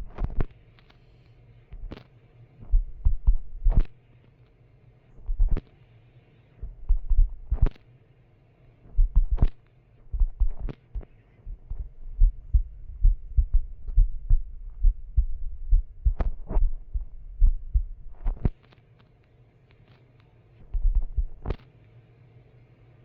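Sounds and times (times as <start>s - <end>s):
low thumps near microphone: 2.6s - 3.9s, 5.2s - 5.6s, 6.6s - 7.8s, 8.9s - 18.6s, 20.7s - 21.6s.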